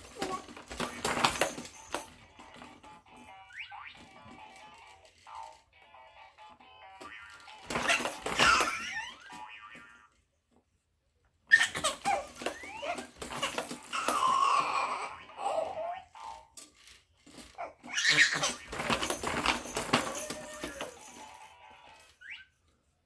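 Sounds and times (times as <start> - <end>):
baby laughing and squealing: 7.1 - 10.1, 11.5 - 16.3, 17.6 - 21.2.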